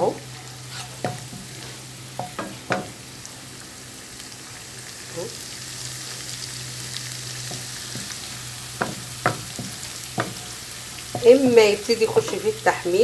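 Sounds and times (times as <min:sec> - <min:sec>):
garlic sizzling in a pan: 0:00.0 - 0:13.0
utensil knocking against pan: 0:02.2 - 0:03.0, 0:08.8 - 0:12.6.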